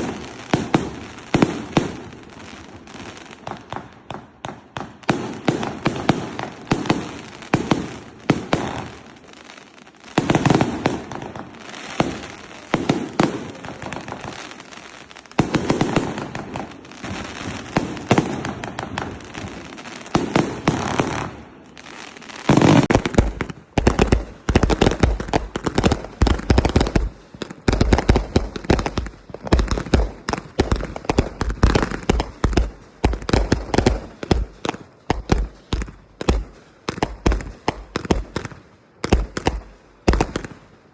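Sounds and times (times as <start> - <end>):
fireworks crackling and popping: 0.0 - 40.9
deep firework thumps: 22.8 - 40.5.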